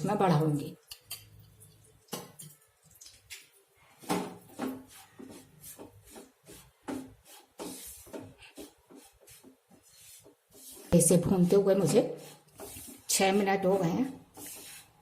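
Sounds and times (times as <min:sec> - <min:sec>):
spatula scraping in a pan: 0:03.9 - 0:15.0.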